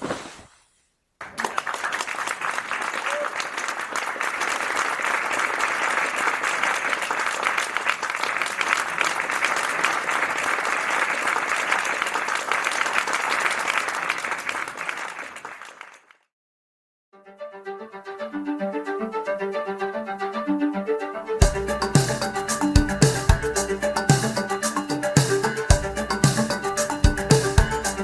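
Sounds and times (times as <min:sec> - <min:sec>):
audience applauding: 0:01.2 - 0:16.2.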